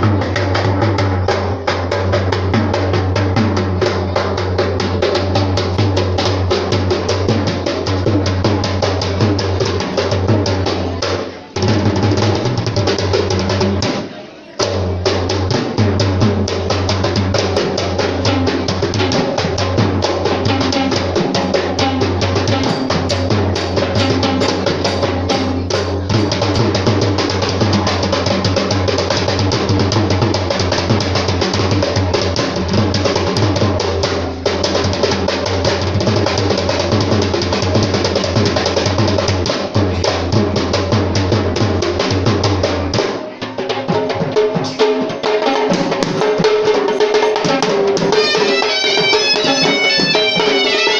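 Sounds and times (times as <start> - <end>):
traditional drums fast rhythm: 0.0 - 50.9
deep drum: 11.6 - 14.0, 14.6 - 43.2.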